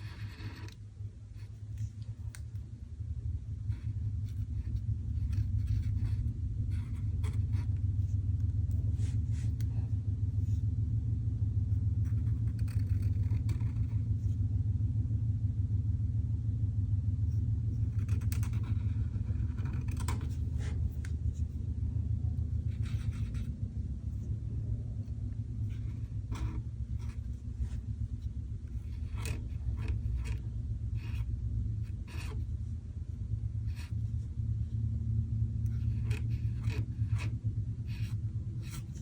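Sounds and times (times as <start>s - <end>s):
pen scratching on paper: 0.0s - 0.8s, 3.6s - 10.6s, 12.0s - 14.4s, 17.8s - 21.5s, 22.4s - 24.3s, 25.0s - 32.6s, 33.6s - 34.2s, 35.6s - 39.0s
low rumble: 0.0s - 39.0s.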